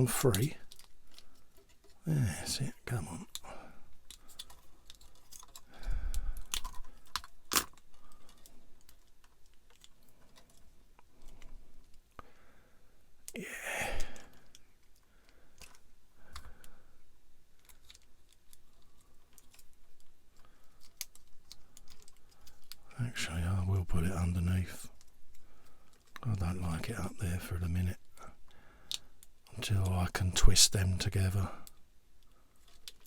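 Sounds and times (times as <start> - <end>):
plastic parts clicking: 0.4 - 2.0, 3.3 - 12.1, 14.2 - 16.7, 17.6 - 22.8, 31.7 - 33.0
handling rustle: 3.2 - 5.7.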